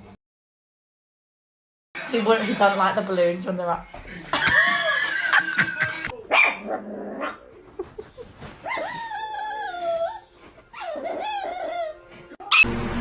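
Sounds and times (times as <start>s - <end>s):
dog whining: 6.4s - 12.7s.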